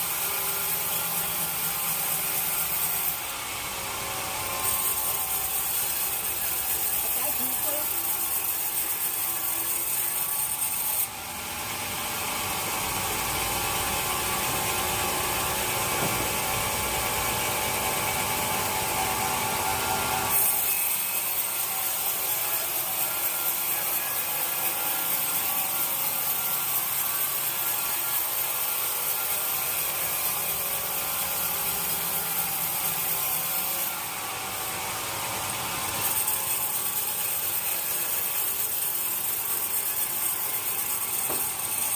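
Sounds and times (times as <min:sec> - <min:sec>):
saw cutting through wood: 0:00.0 - 0:41.9.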